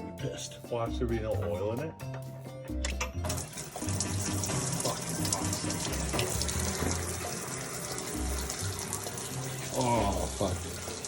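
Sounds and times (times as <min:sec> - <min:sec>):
bass-heavy music: 0:00.0 - 0:07.4
oil gushing and splashing: 0:03.3 - 0:11.0.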